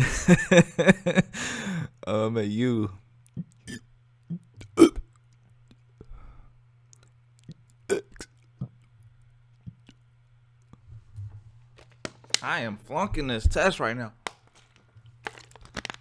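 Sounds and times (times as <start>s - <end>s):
throat clicks and gulps: 3.2s - 6.1s, 6.9s - 10.8s
man burping: 4.6s - 5.1s, 7.9s - 8.3s.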